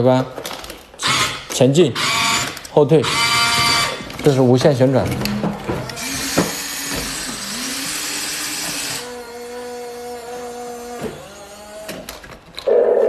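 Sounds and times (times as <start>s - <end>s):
toy electric motors whirring: 1.0s - 4.2s, 5.8s - 12.4s.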